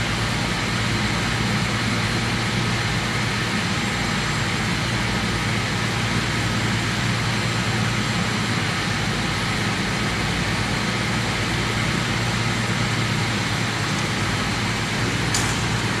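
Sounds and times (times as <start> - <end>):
machinery low hum: 0.0 - 16.0.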